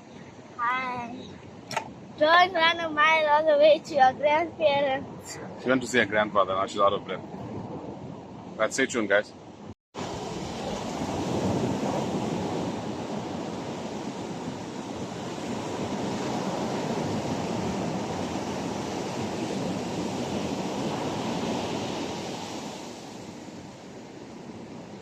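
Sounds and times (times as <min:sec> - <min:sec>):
wind buffeting microphone: 0:00.0 - 0:25.0
ocean surf breaking on shore: 0:10.0 - 0:25.0.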